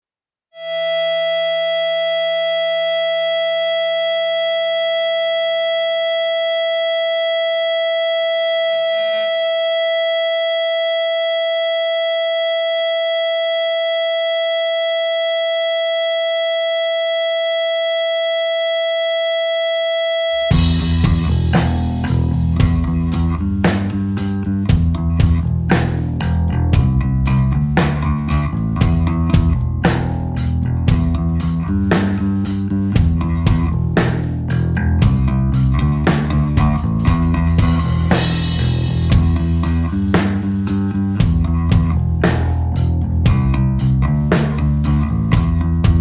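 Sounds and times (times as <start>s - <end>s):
steady high siren-like tone: 0.6s - 21.0s
rock band playing: 20.5s - 46.0s.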